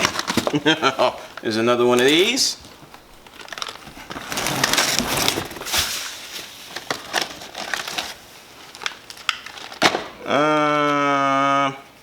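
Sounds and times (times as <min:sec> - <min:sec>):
packaging rustling and crinkling: 0:00.0 - 0:10.1.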